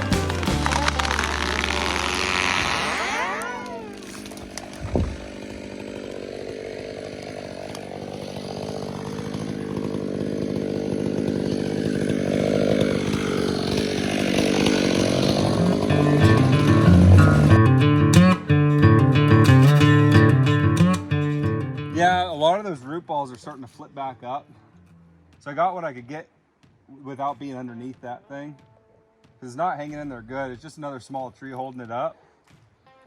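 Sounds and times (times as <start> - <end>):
chainsaw running under load: 0.0 - 22.6.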